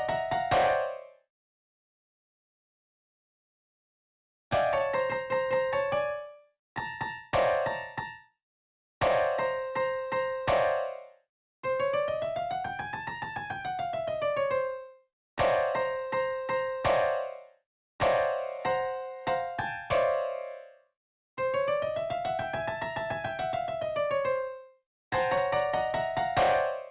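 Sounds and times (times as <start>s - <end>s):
piano melody: 0.0s - 1.1s, 4.6s - 8.2s, 9.0s - 11.1s, 11.7s - 20.7s, 21.4s - 24.6s, 25.2s - 26.9s.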